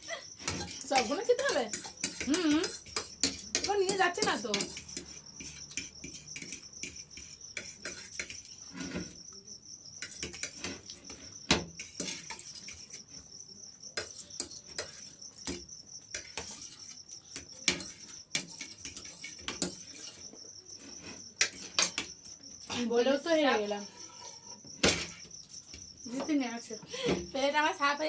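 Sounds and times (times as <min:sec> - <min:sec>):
crickets chirring: 0:00.0 - 0:28.0
clicks and taps on plates: 0:00.4 - 0:08.5, 0:10.0 - 0:12.9, 0:14.0 - 0:19.9, 0:21.4 - 0:22.3.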